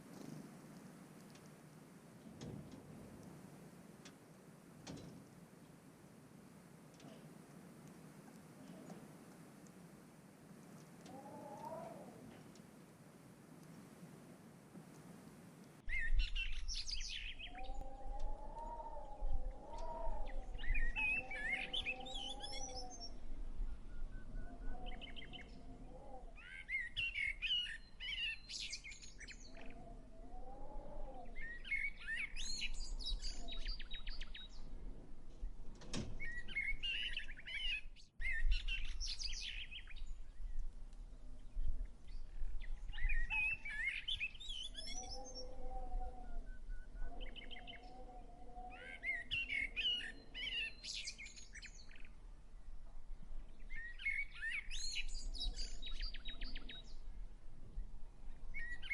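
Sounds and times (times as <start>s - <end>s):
songbirds chirping: 0.0s - 58.9s
lower held bird call: 11.1s - 12.3s, 15.9s - 23.2s, 42.9s - 52.1s.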